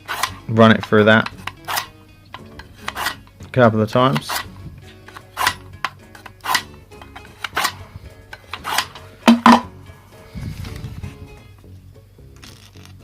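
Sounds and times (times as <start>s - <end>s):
knife scraping through sharpener: 0.0s - 3.3s, 4.2s - 9.1s
background music: 0.0s - 13.0s.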